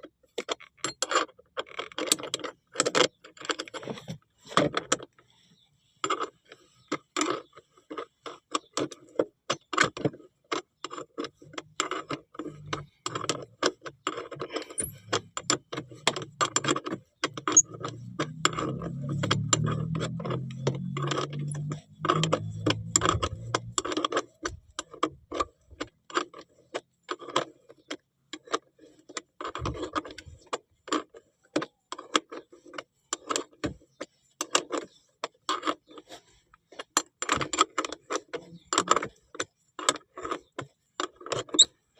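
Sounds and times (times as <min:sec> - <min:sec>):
ratchet wrench clicking: 0:17.4 - 0:24.0.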